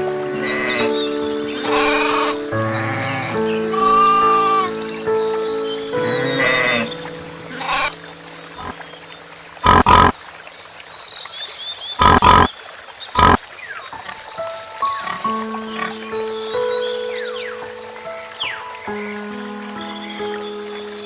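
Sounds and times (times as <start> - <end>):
animal calling: 0.3 - 5.0, 5.9 - 8.8, 9.6 - 10.1, 12.0 - 12.5, 13.2 - 13.4.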